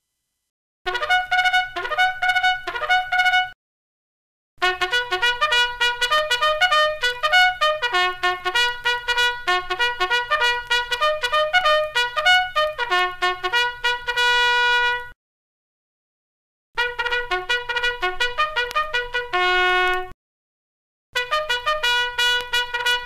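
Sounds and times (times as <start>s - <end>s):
bugle call: 0.9s - 3.6s, 4.6s - 15.1s, 16.8s - 20.1s, 21.2s - 23.0s.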